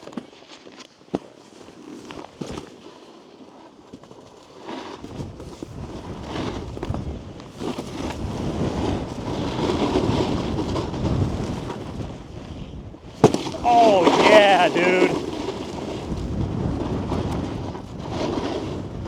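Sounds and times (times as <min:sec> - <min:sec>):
snowboard scraping over snow: 0:13.3 - 0:19.0.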